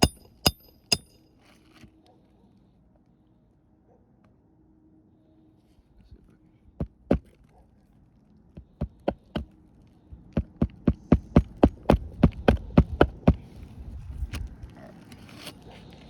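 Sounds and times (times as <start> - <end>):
hammer striking roofing nail: 0.0 - 1.2, 8.6 - 9.5, 10.4 - 13.4.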